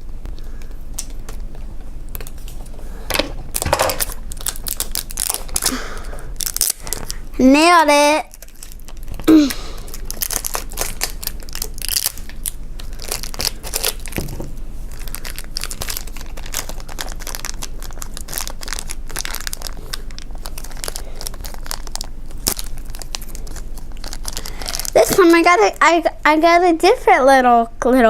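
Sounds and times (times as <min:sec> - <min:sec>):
plastic wrapping crinkling and tearing: 0:03.4 - 0:26.1.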